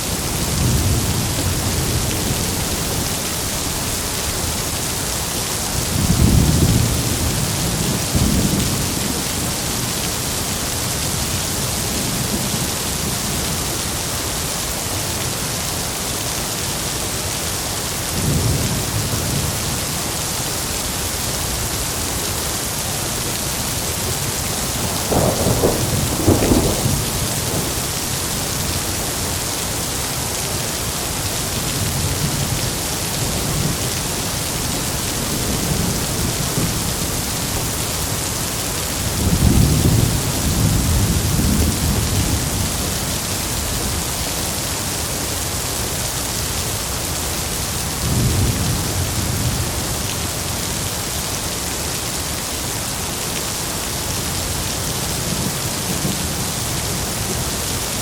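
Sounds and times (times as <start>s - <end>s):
heavy rain falling: 0.0s - 58.0s
thunder rumbling: 24.0s - 29.3s.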